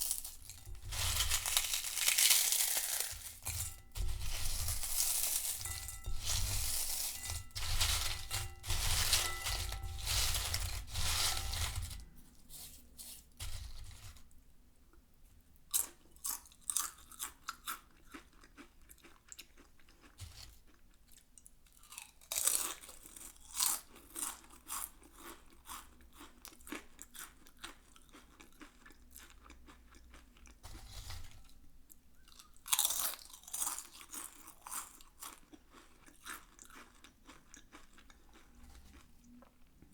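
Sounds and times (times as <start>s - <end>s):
potato chips crackling in bowl: 0.0s - 14.4s, 32.3s - 39.4s.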